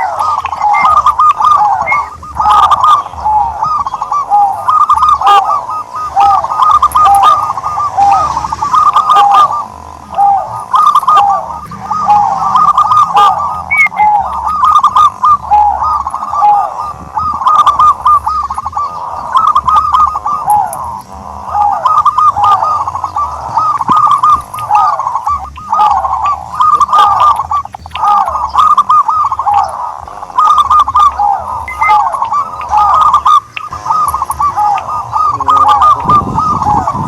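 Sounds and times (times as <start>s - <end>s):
turtle dove cooing: 0.0s - 37.0s.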